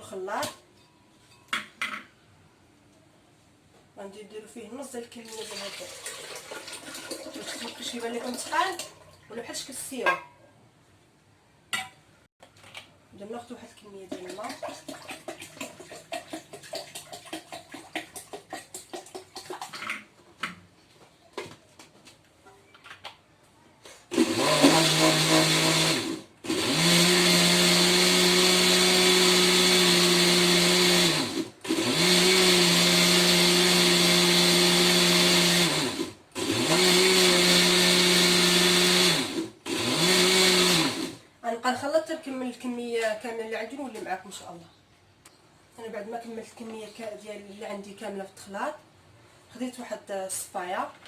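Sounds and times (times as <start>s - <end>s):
water pouring into blender jar: 5.3s - 8.0s
electric blender running: 24.1s - 41.2s.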